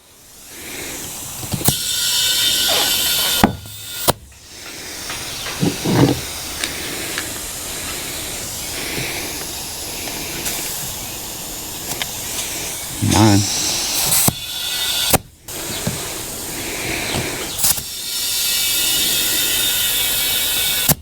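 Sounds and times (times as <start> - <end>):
burst of hissing air: 0.0 - 21.0.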